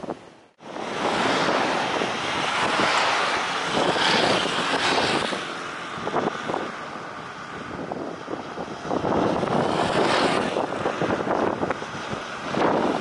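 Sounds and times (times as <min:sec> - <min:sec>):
jet airliner roar overhead: 0:00.0 - 0:13.0.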